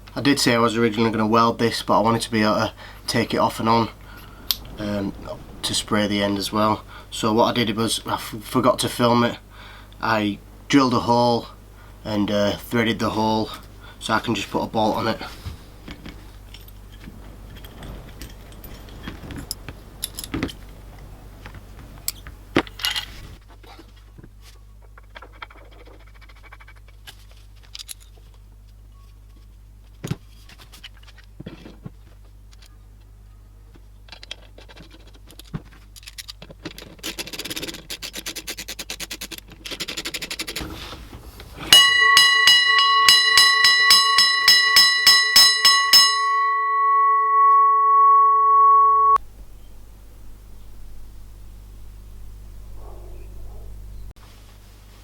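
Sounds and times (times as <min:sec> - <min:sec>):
metallic clicks and clatter: 0:34.1 - 0:40.6
rapid mechanism clicking: 0:34.3 - 0:40.6
alarm bell ringing loudly: 0:41.8 - 0:49.2.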